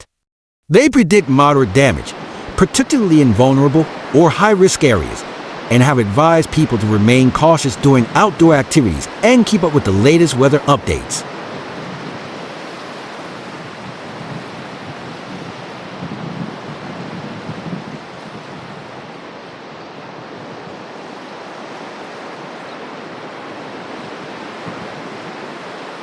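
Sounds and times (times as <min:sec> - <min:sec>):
rushing water: 0:00.8 - 0:26.0
wind buffeting microphone: 0:11.3 - 0:25.9.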